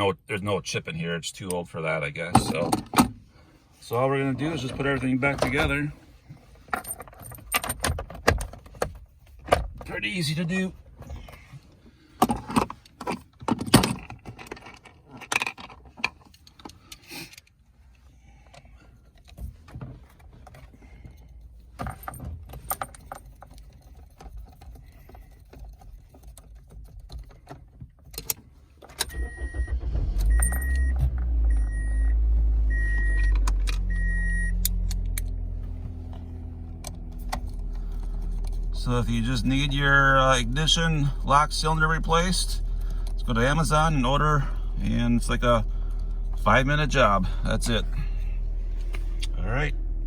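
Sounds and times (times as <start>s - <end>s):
car engine starting and running: 0.6s - 27.7s, 28.3s - 50.0s
high warning chime beeping: 29.1s - 34.6s.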